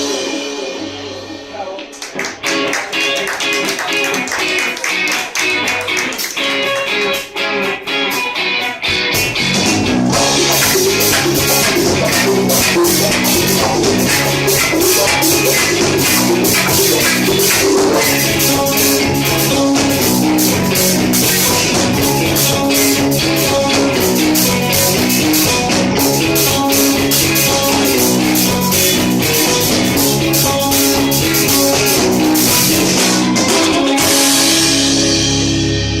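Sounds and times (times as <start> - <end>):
drum kit with cymbals: 0.0 - 1.8, 9.1 - 36.0
electric guitar chords: 0.0 - 36.0.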